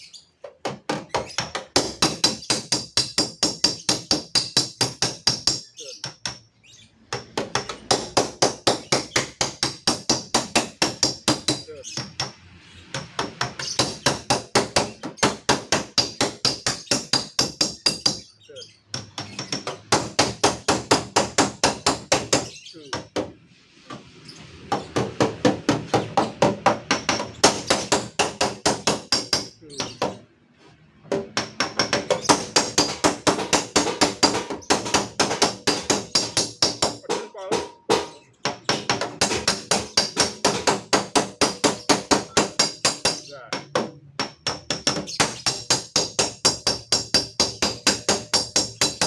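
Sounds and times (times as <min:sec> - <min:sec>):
hammer tapping sheet metal: 0:00.7 - 0:06.4, 0:07.1 - 0:12.3, 0:13.1 - 0:18.2, 0:19.0 - 0:23.3, 0:24.7 - 0:30.2, 0:31.1 - 0:49.0
metal ringing: 0:31.4 - 0:38.4.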